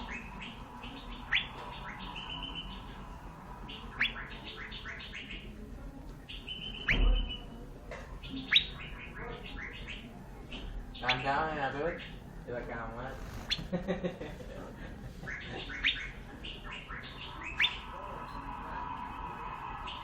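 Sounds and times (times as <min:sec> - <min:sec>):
bird chirping and whistling: 0:00.0 - 0:03.1, 0:03.7 - 0:05.5, 0:06.3 - 0:07.4, 0:08.2 - 0:11.4, 0:15.3 - 0:18.6, 0:19.2 - 0:20.0
sharp upward-sweeping whistles: 0:00.0 - 0:05.0, 0:16.7 - 0:20.0.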